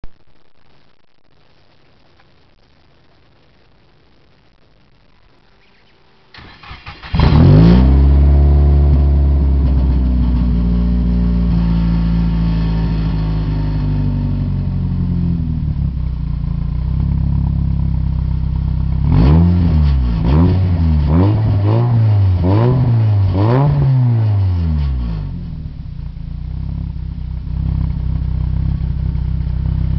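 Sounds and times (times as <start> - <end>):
car engine idling: 5.7 - 19.3, 19.9 - 29.9
car engine cranking: 6.3 - 10.4
car engine revving: 6.3 - 25.8.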